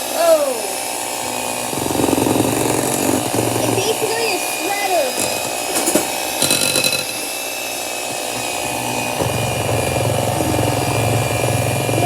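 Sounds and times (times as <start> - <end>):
electric hand mixer running: 0.0 - 12.0
deep hum: 8.3 - 12.0.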